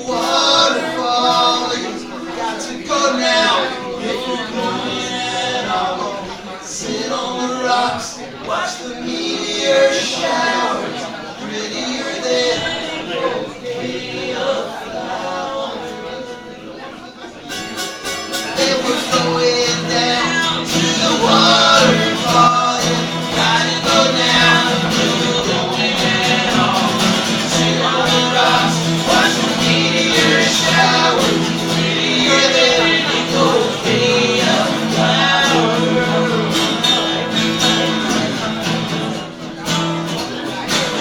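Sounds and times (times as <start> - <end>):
strummed acoustic guitar: 0.0 - 41.0
bending lead guitar melody: 17.5 - 41.0.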